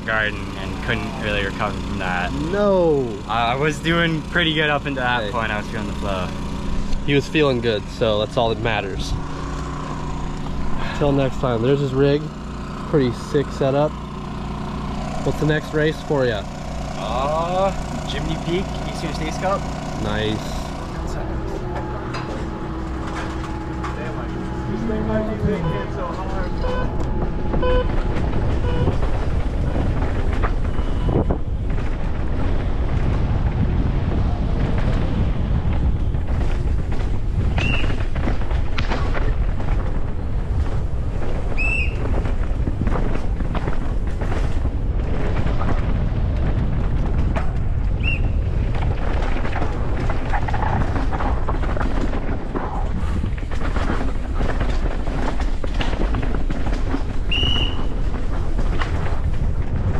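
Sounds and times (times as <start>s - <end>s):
wind buffeting microphone: 0.0s - 59.9s
mountain bike rattling on rocks: 34.6s - 59.9s
short high squeaks: 37.6s - 38.0s, 41.5s - 42.1s, 57.3s - 57.9s.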